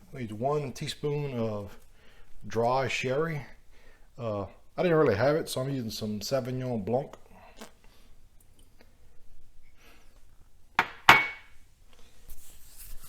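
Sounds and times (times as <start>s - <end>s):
sharp knocks with ringing clink: 10.8s - 11.5s.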